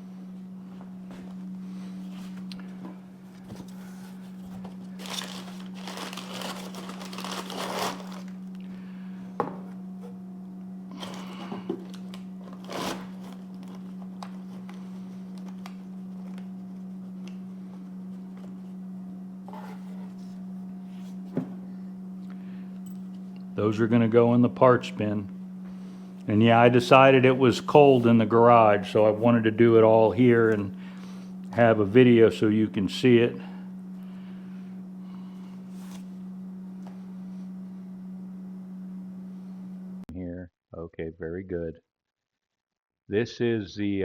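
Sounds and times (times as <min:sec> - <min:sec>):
steady low hum: 0:00.0 - 0:40.1
packing material crinkling: 0:03.8 - 0:08.6, 0:10.9 - 0:15.8.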